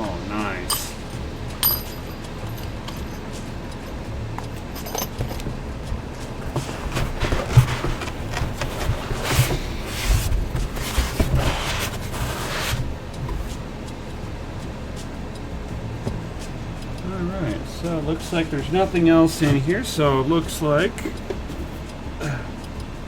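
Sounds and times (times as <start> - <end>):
small parts being handled: 0.7 - 13.5
packaging rustling: 5.9 - 13.6.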